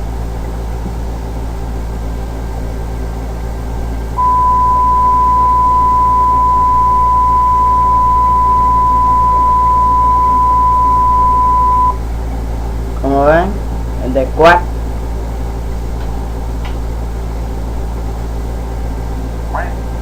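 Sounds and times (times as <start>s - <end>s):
low background hum: 0.0s - 20.0s
censor bleep tone: 4.2s - 12.0s.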